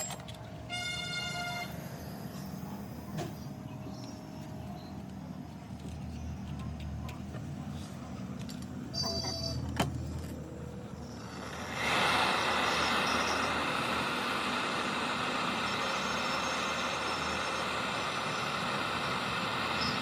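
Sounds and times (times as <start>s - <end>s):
heating tool hissing: 11.1s - 20.0s.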